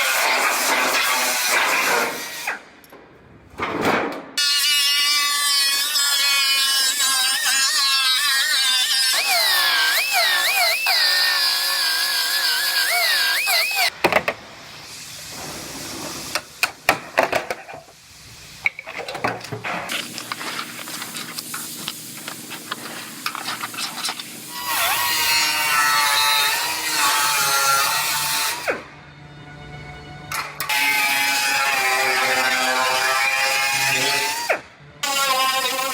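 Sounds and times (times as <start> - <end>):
power tool on sheet metal: 4.4 - 14.0, 24.5 - 28.8, 30.6 - 35.9.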